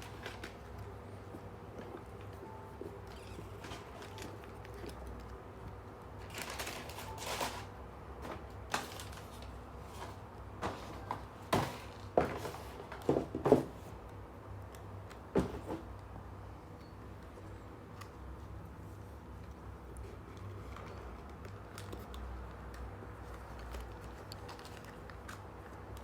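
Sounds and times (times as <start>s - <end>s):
packaging rustling: 6.2s - 7.7s, 23.3s - 25.7s.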